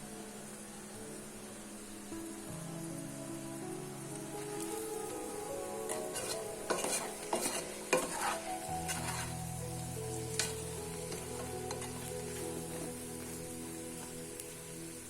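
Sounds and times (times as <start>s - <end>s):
background music with sustained notes: 0.0s - 15.0s.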